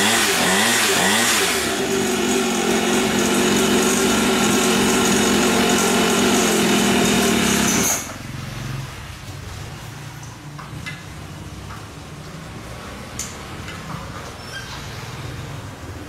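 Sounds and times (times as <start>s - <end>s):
dirt bike engine running: 0.0s - 7.9s.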